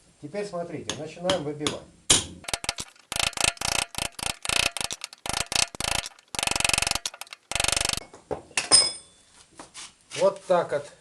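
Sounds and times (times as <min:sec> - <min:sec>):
pneumatic air hammer bursts: 0:02.1 - 0:08.0.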